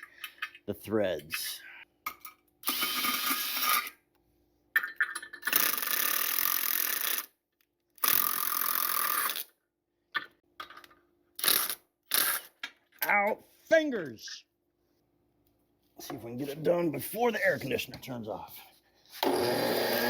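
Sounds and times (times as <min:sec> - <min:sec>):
ratchet wrench clicking: 0:05.5 - 0:07.3, 0:08.0 - 0:09.4.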